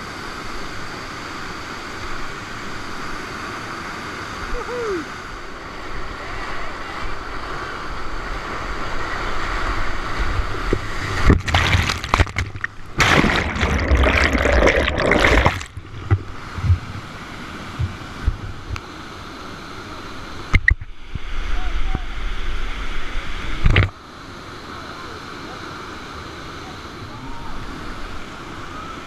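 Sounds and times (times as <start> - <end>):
whitewater rushing: 9.7 - 18.2
water splashing over microphone: 10.3 - 17.0.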